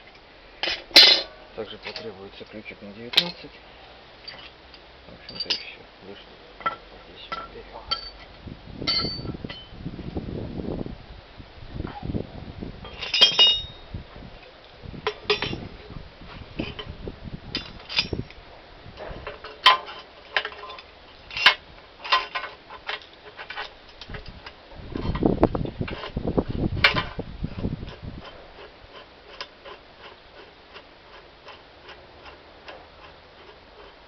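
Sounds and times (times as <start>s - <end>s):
metal tools clinking: 0.6s - 3.5s, 4.2s - 5.8s, 6.6s - 9.8s, 12.8s - 13.9s, 15.1s - 15.7s, 17.6s - 18.4s, 19.2s - 24.3s
ringing metallic clink: 7.3s - 8.3s, 8.9s - 9.8s, 12.9s - 13.9s, 17.6s - 18.3s.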